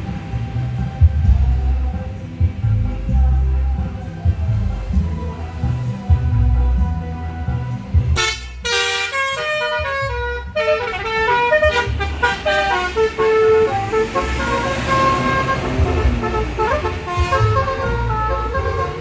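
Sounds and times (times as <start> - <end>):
bus engine rumble: 0.0 - 19.0
musical bus horn playing a tune: 8.0 - 19.0.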